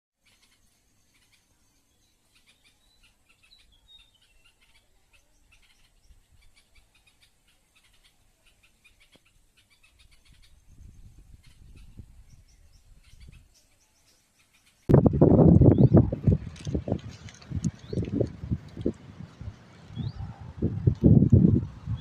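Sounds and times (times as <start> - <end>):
bulbuls chirping: 0.2 - 22.0.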